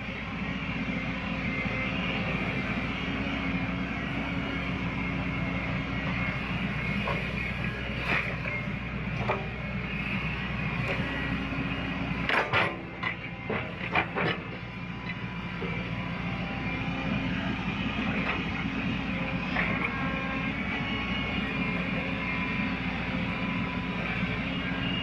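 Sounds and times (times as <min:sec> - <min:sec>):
excavator diesel engine running: 0:00.0 - 0:25.0.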